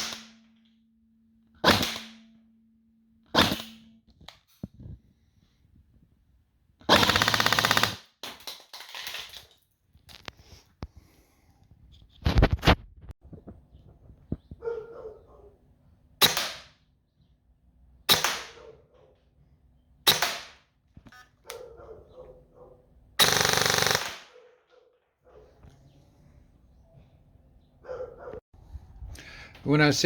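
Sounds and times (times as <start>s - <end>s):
airsoft gun firing: 0.0s - 0.4s, 1.6s - 2.3s, 3.3s - 3.8s, 6.9s - 8.2s, 16.2s - 16.7s, 18.1s - 18.6s, 20.1s - 20.6s, 23.2s - 24.4s.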